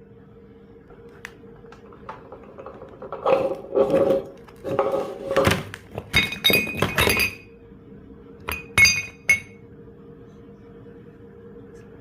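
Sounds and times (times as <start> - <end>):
faint steady hum: 0.0 - 12.0
glass clinking: 6.1 - 7.5, 8.5 - 9.6.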